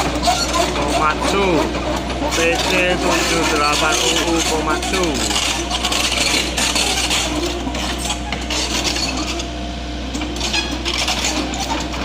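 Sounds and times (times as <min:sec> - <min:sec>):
excavator engine drone: 0:00.0 - 0:12.0
steel parts clattering and scraping: 0:02.3 - 0:09.4.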